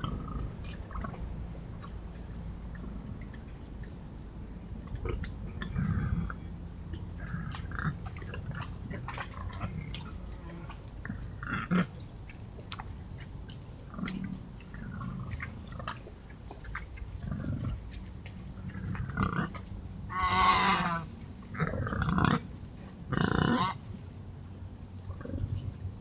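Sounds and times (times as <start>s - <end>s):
boar grunting: 0.0s - 1.2s, 4.9s - 12.0s, 13.8s - 16.2s, 17.2s - 23.8s, 25.1s - 25.7s
small ticks and rustles: 0.0s - 20.1s
boar squealing: 20.1s - 21.1s.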